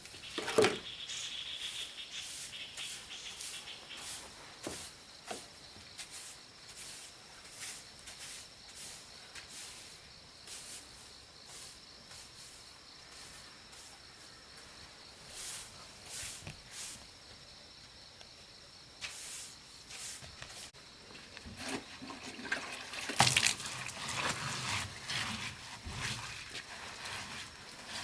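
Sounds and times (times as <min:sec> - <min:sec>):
insects trilling: 0:00.0 - 0:22.1.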